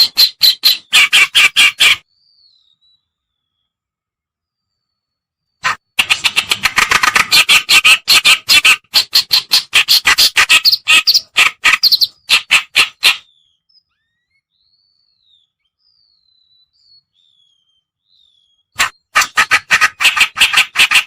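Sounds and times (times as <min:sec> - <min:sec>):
harsh rapid bird chattering: 0:00.0 - 0:02.0, 0:05.6 - 0:13.3, 0:18.8 - 0:21.0.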